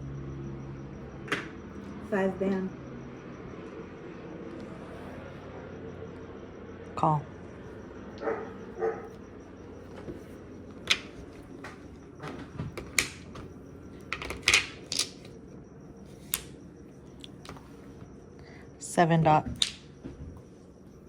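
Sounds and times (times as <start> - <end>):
mahjong tiles clacking: 14.1 - 15.3.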